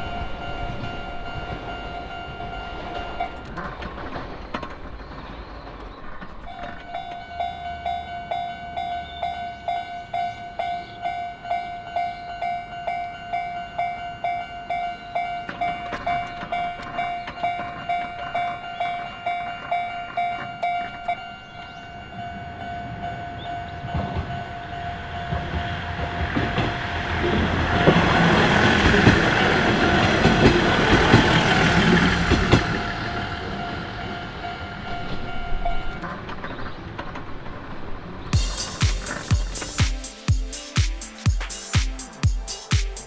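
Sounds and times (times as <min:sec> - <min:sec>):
level crossing bells dinging: 0:00.0 - 0:04.0, 0:06.5 - 0:36.0
train wheels clattering on rails: 0:00.0 - 0:40.2
music: 0:38.4 - 0:43.0.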